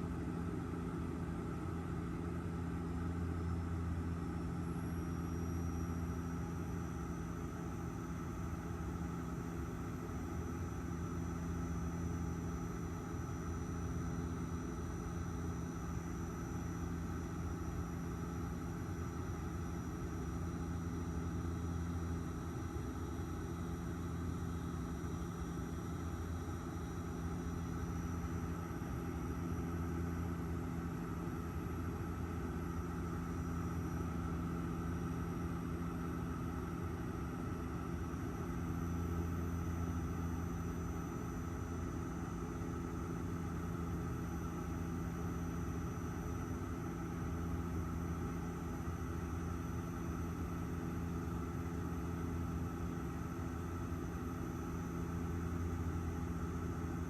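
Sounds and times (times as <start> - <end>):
airliner cabin engine drone: 0.0 - 57.0.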